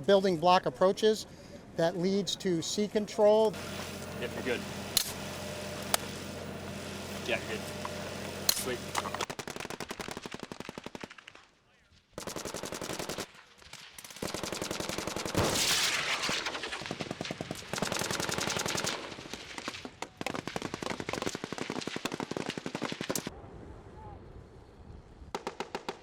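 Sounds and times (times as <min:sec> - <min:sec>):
machine guns firing: 0:03.4 - 0:11.5, 0:12.2 - 0:23.3, 0:25.4 - 0:26.0.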